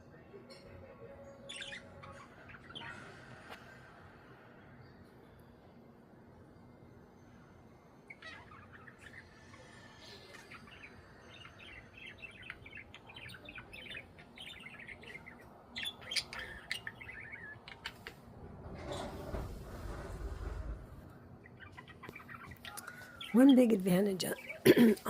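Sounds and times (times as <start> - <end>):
budgies chattering: 1.4 - 3.1, 8.1 - 18.3, 21.4 - 25.0.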